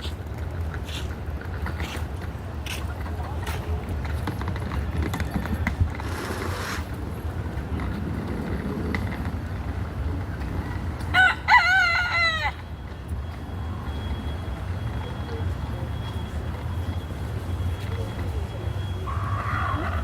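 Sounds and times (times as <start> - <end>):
rooster crowing: 11.1 - 12.6.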